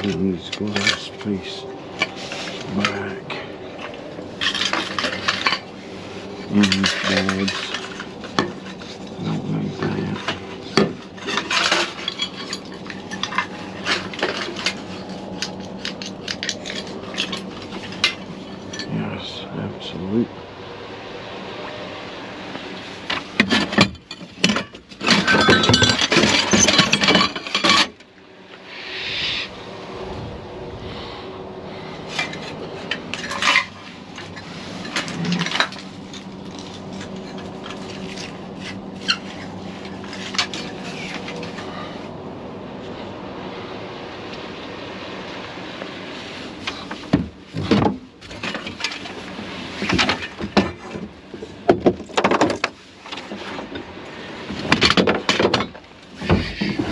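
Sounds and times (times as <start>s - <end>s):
metal and wood clattering: 0.0s - 19.2s, 22.8s - 28.1s, 32.0s - 41.9s, 46.5s - 56.9s
steady low hum: 0.0s - 56.9s.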